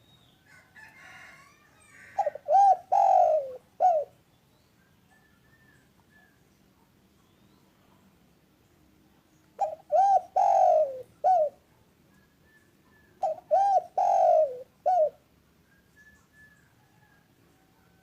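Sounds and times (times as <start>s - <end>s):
dove cooing: 1.8s - 4.2s, 9.6s - 11.6s, 12.9s - 15.3s
faint high chirps: 15.6s - 17.2s.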